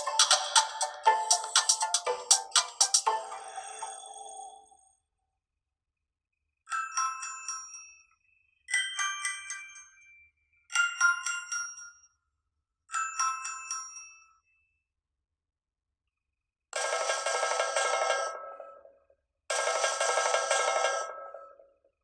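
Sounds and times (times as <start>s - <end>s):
phone ringtone: 0.0s - 4.8s.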